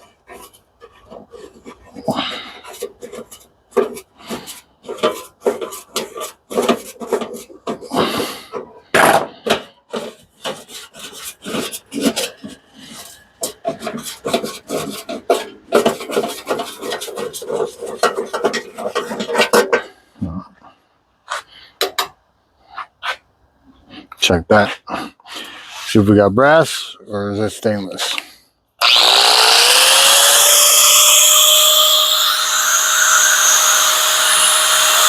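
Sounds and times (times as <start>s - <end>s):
metal being filed by hand: 0.0s - 8.5s, 9.9s - 19.5s, 28.8s - 35.0s.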